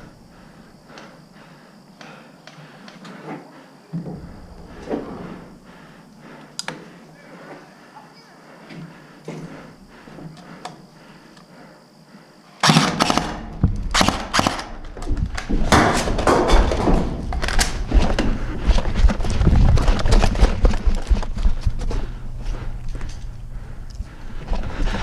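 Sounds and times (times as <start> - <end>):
airsoft guns firing: 12.6 - 14.8.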